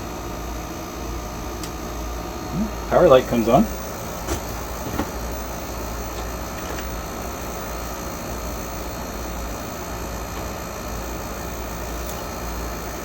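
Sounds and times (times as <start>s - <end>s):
computer hum and hiss: 0.0s - 13.0s
floppy drive clicks: 1.5s - 1.9s, 2.6s - 8.1s, 8.7s - 12.5s.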